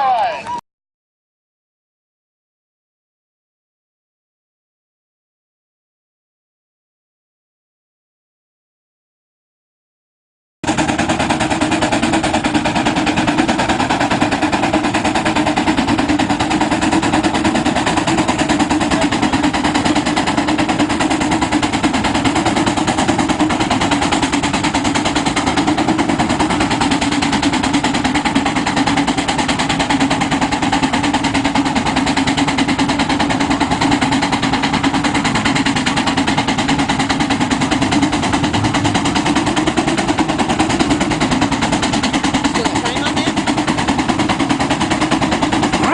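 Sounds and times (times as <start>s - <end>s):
steam traction engine chuffing: 10.6s - 45.9s.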